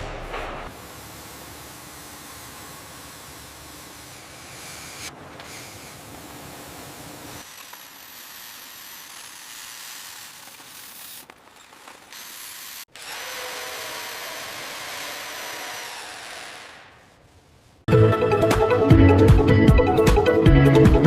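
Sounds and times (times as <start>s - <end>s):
power tool whirring: 0.8s - 17.0s.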